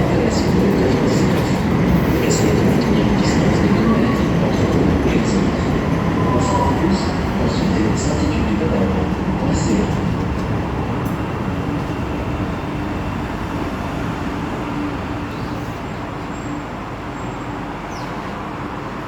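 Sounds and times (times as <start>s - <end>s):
light rail train rumbling: 0.0s - 19.0s.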